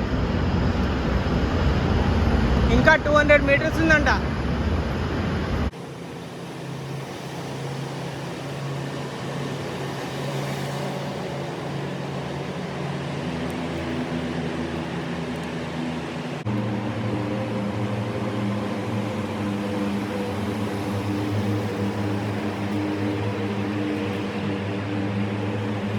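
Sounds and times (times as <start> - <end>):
mechanical drone in tunnel: 0.0 - 25.9.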